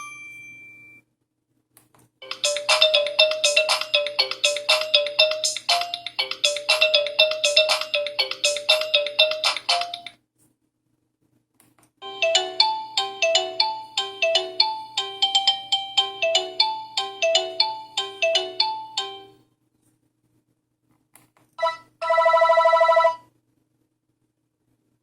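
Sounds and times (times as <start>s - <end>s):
mobile phone ringtone melody: 0.0s - 1.0s, 2.2s - 10.1s, 12.0s - 19.4s, 21.6s - 23.2s.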